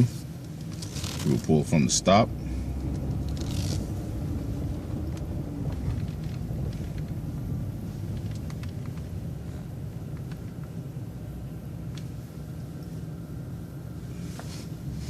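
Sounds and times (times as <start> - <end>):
bus engine rumble: 0.0 - 15.0
faint engine whine: 0.0 - 15.0.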